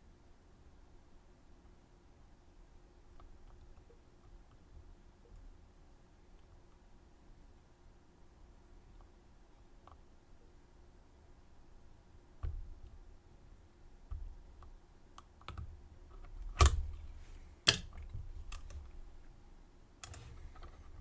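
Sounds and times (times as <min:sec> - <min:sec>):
lock picks clicking in padlock: 0:16.2 - 0:18.8.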